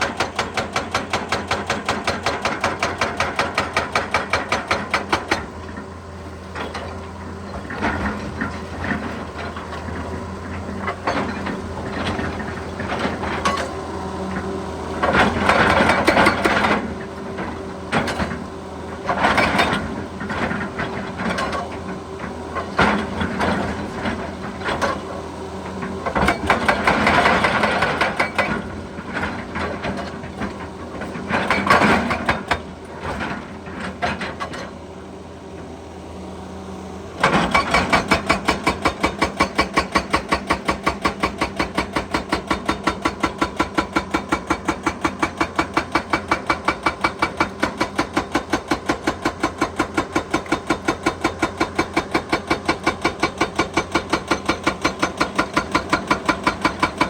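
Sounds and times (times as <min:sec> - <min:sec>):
hydraulic breaker hammering: 0:00.0 - 0:05.5, 0:37.2 - 0:57.0
excavator running: 0:00.0 - 0:57.0.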